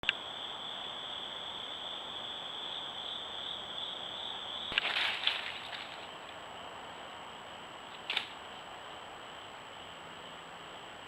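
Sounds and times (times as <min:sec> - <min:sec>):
high-pitched insect chorus: 0:00.1 - 0:10.9
crackling rustle: 0:04.7 - 0:06.4, 0:07.9 - 0:08.7.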